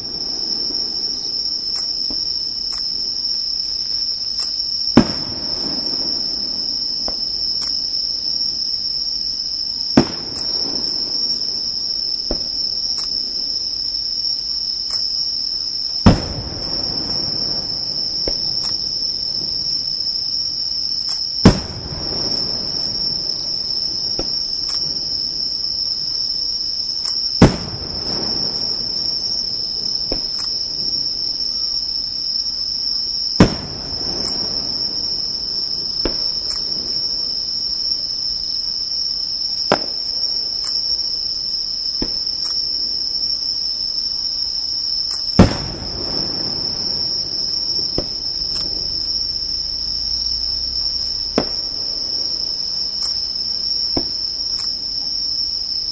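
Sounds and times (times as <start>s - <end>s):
insects chirring: 0.0s - 55.9s
firework shells booming: 4.3s - 9.0s, 9.7s - 13.8s, 15.9s - 31.6s, 33.2s - 37.8s, 39.5s - 41.1s, 41.9s - 43.0s, 45.0s - 55.1s.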